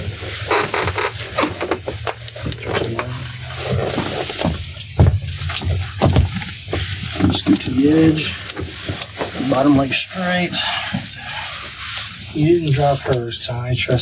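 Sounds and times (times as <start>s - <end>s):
table creaks: 0.0s - 4.7s
rustling on padded table: 0.0s - 13.1s.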